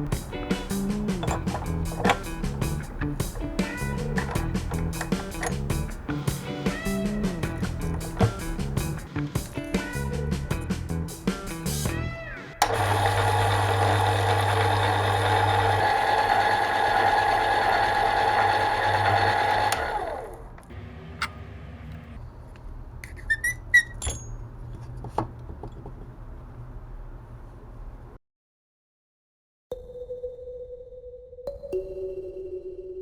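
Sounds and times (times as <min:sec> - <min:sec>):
electric motor running: 0:12.6 - 0:20.5.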